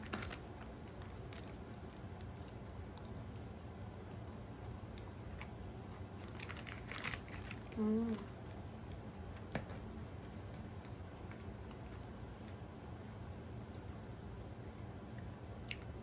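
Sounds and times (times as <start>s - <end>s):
soft crinkling and crackling: 0.0s - 3.7s, 6.1s - 13.9s.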